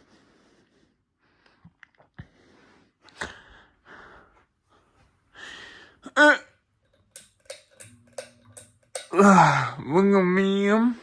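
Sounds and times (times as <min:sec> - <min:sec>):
person breathing and gasping: 0:02.2 - 0:06.1.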